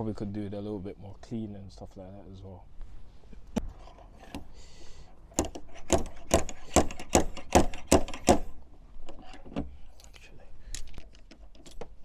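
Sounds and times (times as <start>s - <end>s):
sharp clicks or knocks: 5.3s - 8.5s.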